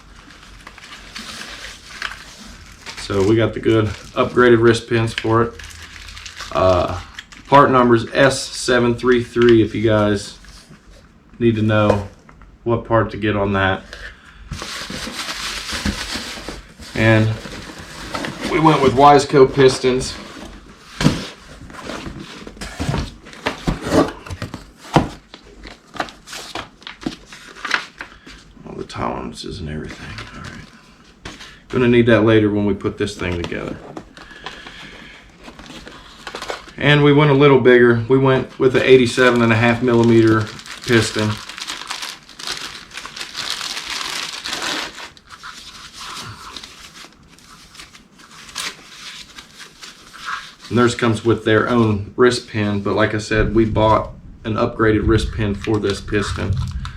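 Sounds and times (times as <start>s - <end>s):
packaging crinkling and rustling: 0.0s - 11.1s, 13.8s - 28.5s, 33.1s - 37.4s, 38.6s - 52.0s.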